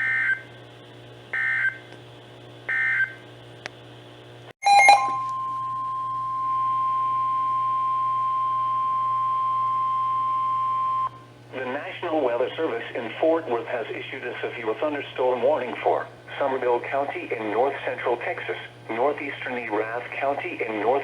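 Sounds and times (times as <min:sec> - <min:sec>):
steady alert tone: 0:04.6 - 0:05.3.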